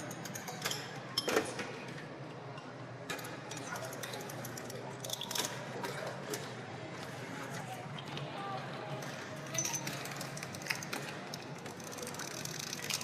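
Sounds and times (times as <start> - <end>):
background murmur: 0.0 - 13.0.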